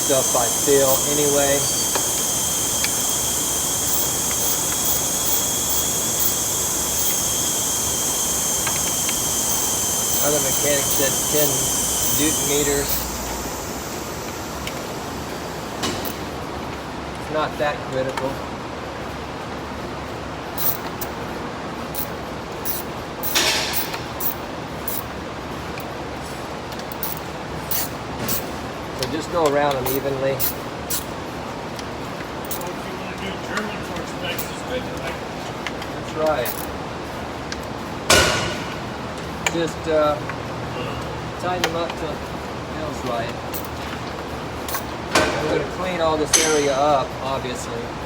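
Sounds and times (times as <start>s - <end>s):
hand ratchet clicking: 0.0s - 16.4s, 20.6s - 21.2s, 22.0s - 25.9s, 26.7s - 31.2s, 32.4s - 32.8s, 36.4s - 36.8s, 43.3s - 43.8s, 44.6s - 45.0s
ratchet rattle: 0.0s - 16.4s, 20.5s - 26.0s, 26.8s - 31.2s, 32.4s - 32.8s, 34.3s - 34.7s, 36.3s - 36.8s, 43.2s - 44.0s, 44.6s - 45.2s
steady shop hiss: 0.0s - 48.0s.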